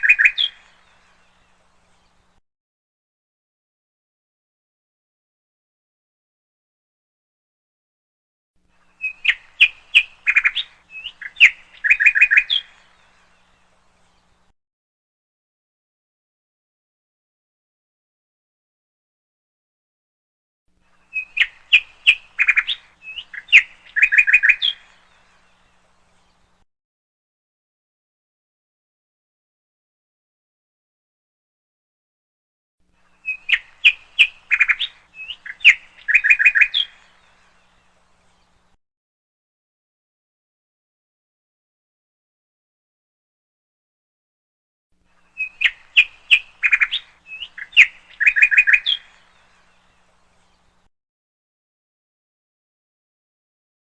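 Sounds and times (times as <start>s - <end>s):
bird chirping: 0.0s - 2.4s, 8.8s - 14.5s, 20.9s - 26.6s, 33.0s - 38.8s, 45.1s - 50.9s.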